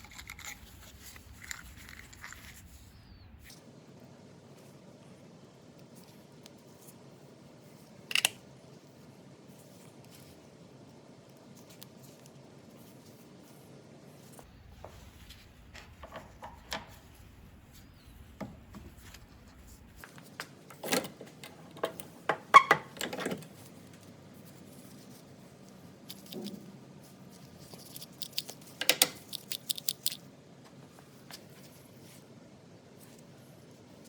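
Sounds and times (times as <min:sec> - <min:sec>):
tool parts clicking and clinking: 0:08.1 - 0:08.4, 0:27.8 - 0:30.2.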